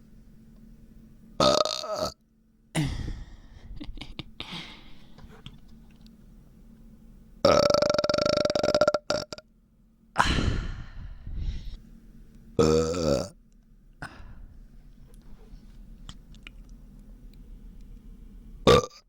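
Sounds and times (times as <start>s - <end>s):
person burping loudly: 1.4s - 2.2s, 7.4s - 9.4s, 12.6s - 13.4s, 18.7s - 19.0s.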